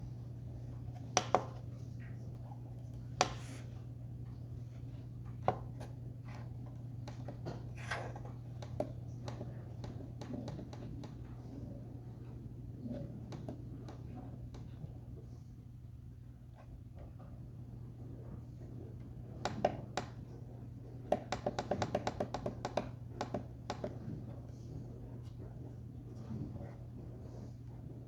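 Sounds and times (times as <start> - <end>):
steady low hum: 0.0 - 28.0
hard object knocks and clicks: 21.1 - 24.0.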